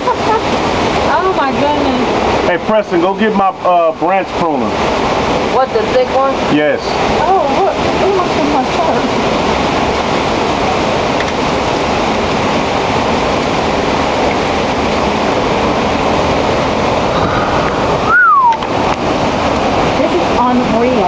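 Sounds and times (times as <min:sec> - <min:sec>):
strong wind through trees: 0:00.0 - 0:21.0
rising and falling tone: 0:17.0 - 0:19.0.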